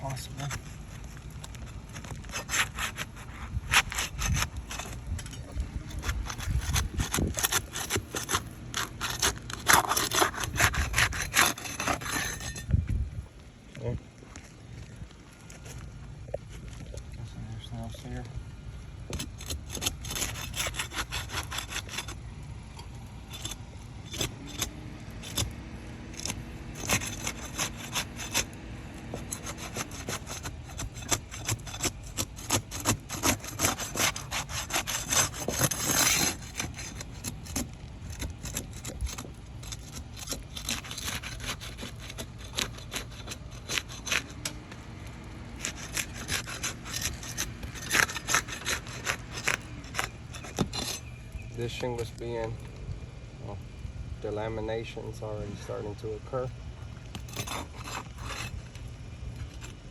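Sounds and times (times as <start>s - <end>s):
metal tool scraping shingles: 0.0s - 12.8s, 19.1s - 22.2s, 22.8s - 44.6s, 45.5s - 52.2s, 57.1s - 59.9s.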